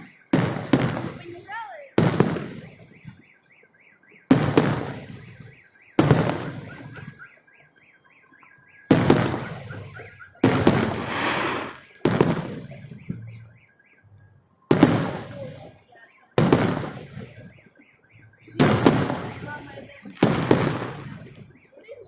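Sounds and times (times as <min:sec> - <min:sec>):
firework bangs echoing: 0:00.0 - 0:03.1, 0:04.3 - 0:07.3, 0:08.9 - 0:13.6, 0:14.7 - 0:17.5, 0:18.5 - 0:21.5
car alarm wailing: 0:00.0 - 0:22.0.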